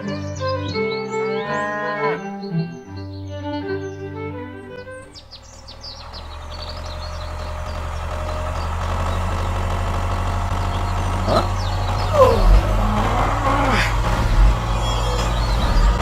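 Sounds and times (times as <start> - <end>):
birds chirping: 0.0 - 16.0
small engine running: 4.7 - 16.0.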